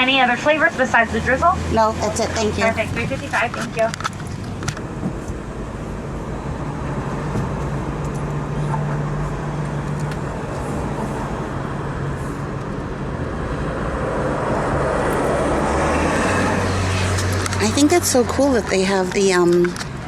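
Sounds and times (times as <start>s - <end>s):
car engine hum inside cabin: 0.0s - 20.0s
road noise: 0.0s - 20.0s.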